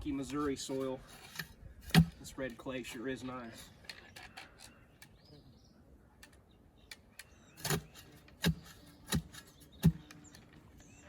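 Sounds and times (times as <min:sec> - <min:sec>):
digging tool chopping into clay: 0:01.2 - 0:02.3, 0:07.6 - 0:10.2.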